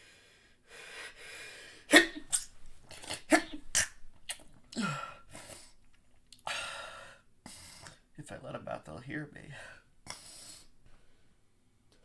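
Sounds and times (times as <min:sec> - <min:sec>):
man's stifled sneezes: 0:01.9 - 0:05.7.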